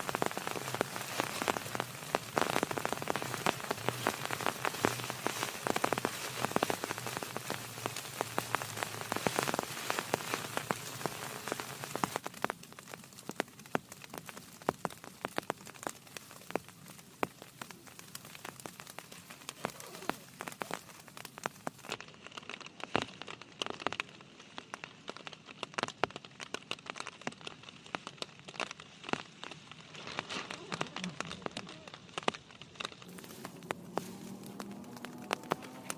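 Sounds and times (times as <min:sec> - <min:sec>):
heavy rain: 0:00.0 - 0:22.6, 0:30.2 - 0:35.9.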